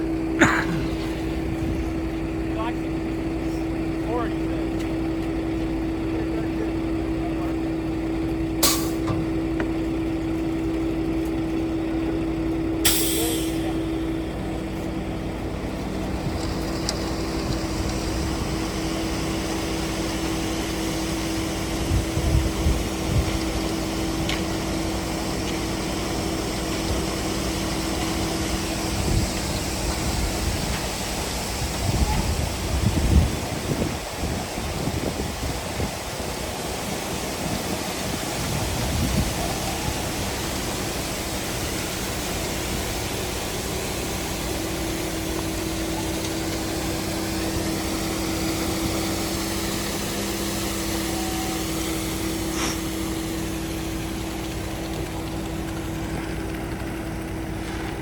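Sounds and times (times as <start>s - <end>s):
truck engine running: 0.0s - 58.0s
air brake hisses: 8.6s - 9.1s, 12.8s - 14.4s, 51.1s - 53.5s.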